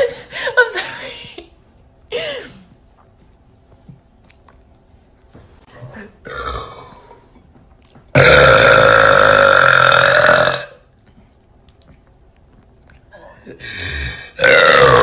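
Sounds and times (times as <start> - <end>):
person burping: 6.2 - 7.2, 8.1 - 10.9, 13.7 - 15.0.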